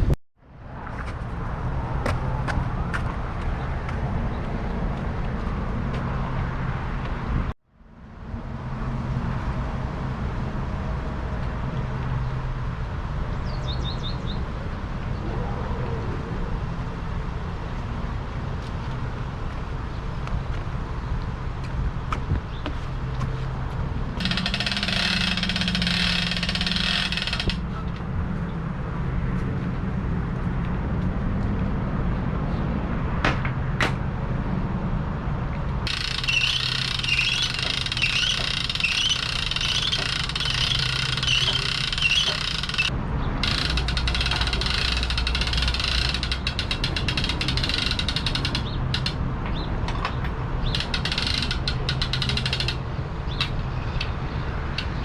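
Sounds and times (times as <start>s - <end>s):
winch ratchet clicking: 24.2s - 27.6s, 35.9s - 49.2s, 50.6s - 54.2s
winch gear grinding: 24.2s - 27.9s, 35.8s - 49.2s, 50.6s - 53.4s.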